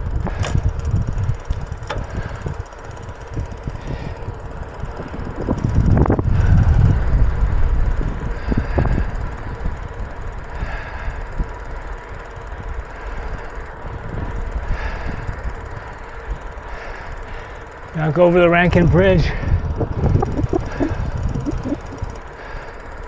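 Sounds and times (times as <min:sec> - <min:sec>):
wind buffeting microphone: 0:00.0 - 0:11.6, 0:18.6 - 0:22.2
bicycle tyre and road rumble: 0:00.0 - 0:23.0.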